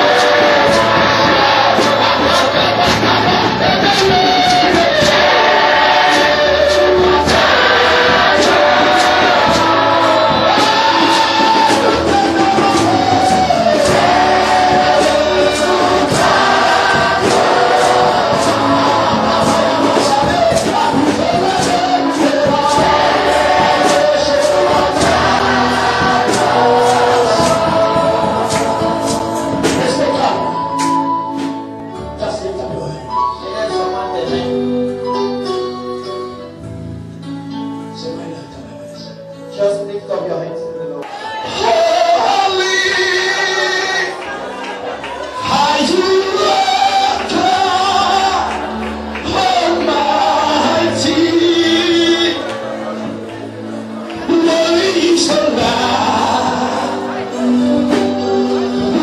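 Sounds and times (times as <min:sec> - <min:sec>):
band with steady drum beat: 0:00.0 - 0:31.7, 0:54.2 - 0:59.0
group singing gospel: 0:00.0 - 0:36.1, 0:41.0 - 0:59.0.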